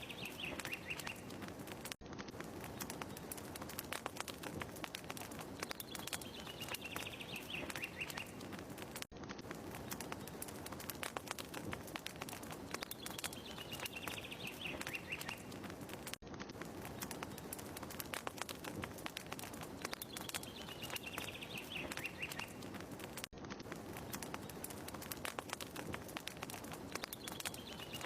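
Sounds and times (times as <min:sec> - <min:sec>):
bird trill: 0:00.0 - 0:01.3, 0:05.8 - 0:08.4
wood fire crackling: 0:00.0 - 0:28.0.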